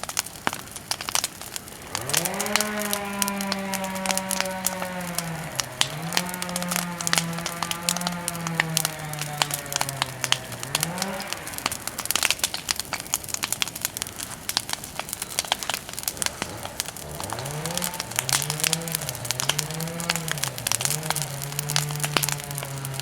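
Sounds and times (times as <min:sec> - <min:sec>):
bonfire crackling and popping: 0:00.0 - 0:23.0
low rising and falling tone: 0:01.4 - 0:12.3.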